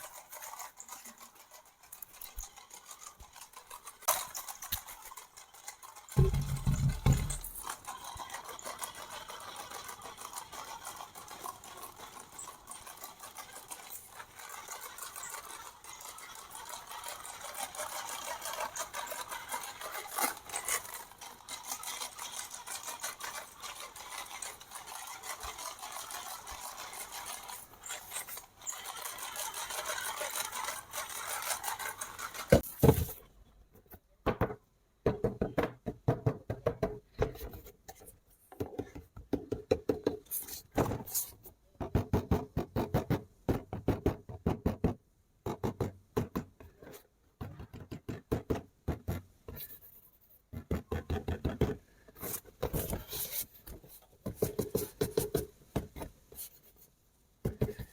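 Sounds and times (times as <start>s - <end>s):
toy motor and gears whirring: 0.0s - 33.2s, 40.2s - 41.6s, 57.5s - 57.9s.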